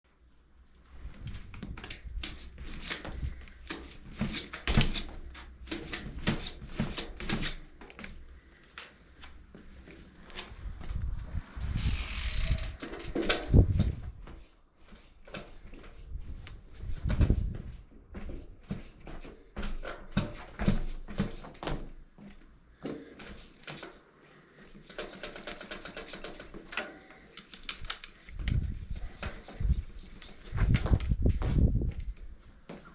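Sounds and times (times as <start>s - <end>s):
suspension fork being pumped: 11.6s - 13.9s
suspension fork clicking and rattling: 24.9s - 28.6s.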